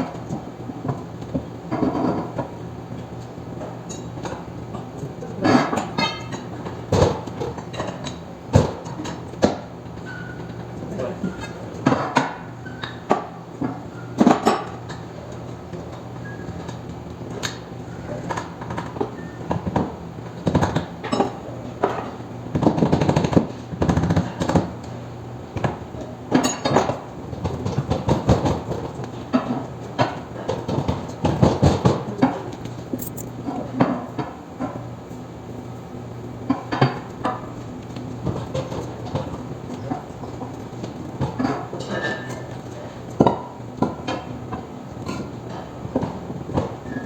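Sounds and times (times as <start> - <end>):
metallic clanks of hand tools: 33.0 - 33.3.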